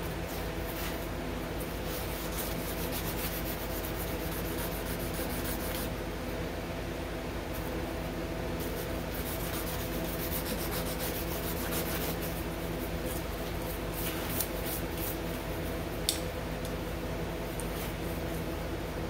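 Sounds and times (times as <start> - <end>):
sandpaper rubbing: 2.0 - 5.9, 8.8 - 12.4.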